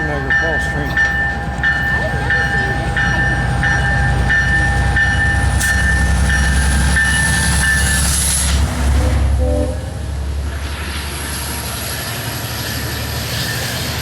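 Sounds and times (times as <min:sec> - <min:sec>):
wheels clacking over rails: 0:00.0 - 0:08.0
train engine rumble: 0:00.0 - 0:14.0
high wheel squeal: 0:00.2 - 0:08.7.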